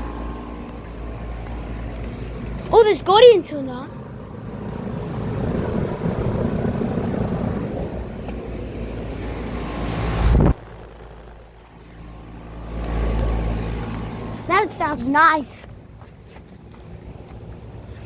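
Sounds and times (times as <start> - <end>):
air conditioner fan rushing: 0.0 - 18.0
low rumble: 3.9 - 14.5.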